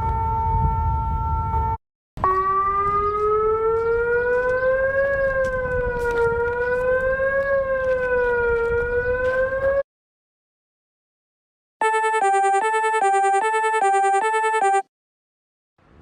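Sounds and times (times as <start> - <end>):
civil defense siren wavering wail: 0.0 - 9.9.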